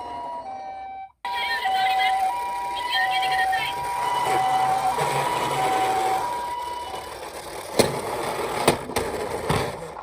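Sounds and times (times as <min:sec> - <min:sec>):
toy two-tone siren: 0:00.0 - 0:07.4.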